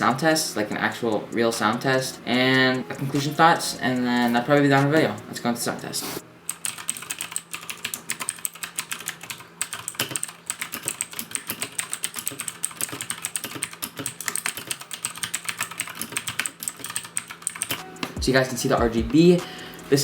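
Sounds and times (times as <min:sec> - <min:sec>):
clicky mechanical keyboard typing: 0:06.5 - 0:17.8.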